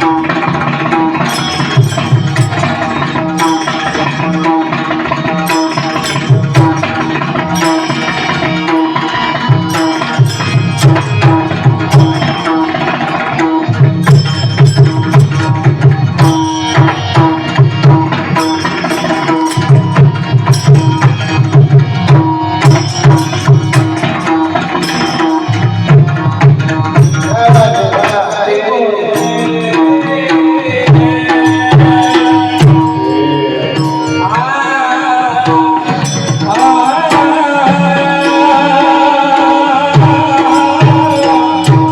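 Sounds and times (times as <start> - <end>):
small cymbals striking: 0.0 - 34.5
steady held notes: 0.0 - 41.9
tabla playing fast rhythm: 0.0 - 41.9
person singing: 27.2 - 41.9.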